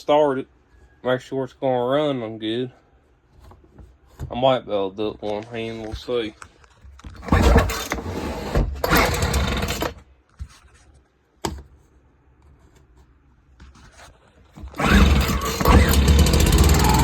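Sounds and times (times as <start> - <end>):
recoil starter pulls: 8.7 - 10.0, 14.6 - 17.0
leaf blower engine running: 14.8 - 17.0.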